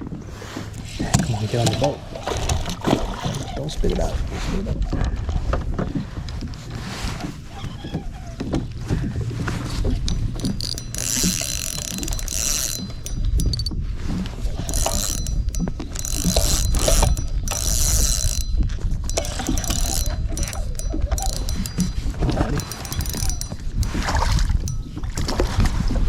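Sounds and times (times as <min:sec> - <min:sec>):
fishing reel ratcheting: 0:09.8 - 0:25.3.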